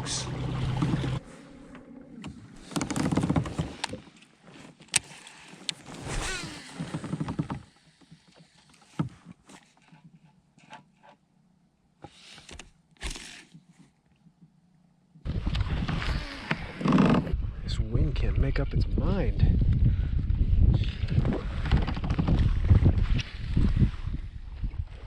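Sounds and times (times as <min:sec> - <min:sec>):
water splashing against hull: 0:00.0 - 0:04.2
wind on microphone: 0:15.2 - 0:25.0.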